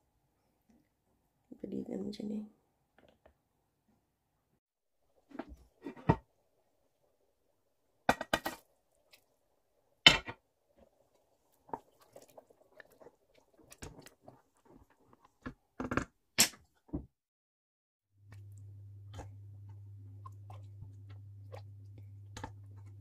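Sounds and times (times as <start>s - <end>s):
kitchen clicks and knocks: 8.1s - 8.6s
low steady hum: 18.2s - 23.0s.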